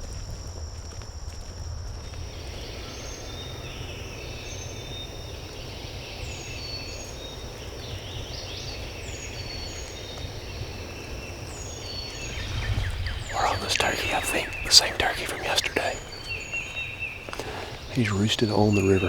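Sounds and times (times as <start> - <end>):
songbirds chirping: 2.0 - 19.0
wind on microphone: 10.4 - 17.9.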